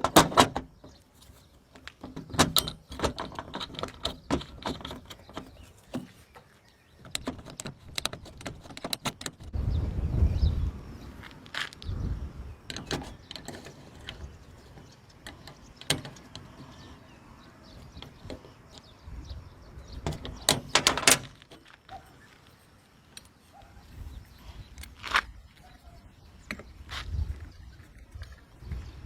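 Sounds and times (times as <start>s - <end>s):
hand tools clicking and knocking: 1.7s - 6.4s, 7.0s - 9.5s, 12.7s - 17.0s, 20.0s - 22.0s.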